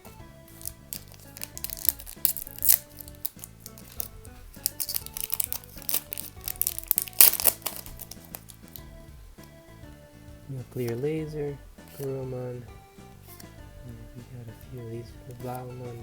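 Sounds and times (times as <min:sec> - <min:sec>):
background music: 0:00.0 - 0:16.0
foil wrapper crinkling and tearing: 0:00.5 - 0:08.8.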